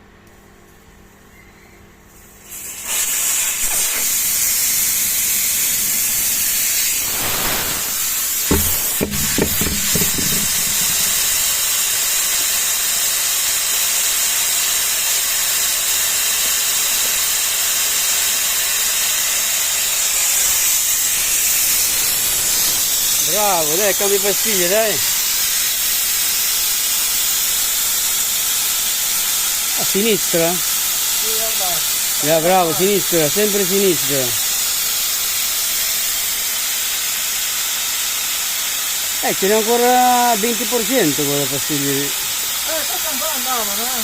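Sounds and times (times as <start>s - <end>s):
compressed air hissing: 2.2s - 44.0s
metallic clanks: 8.5s - 11.4s.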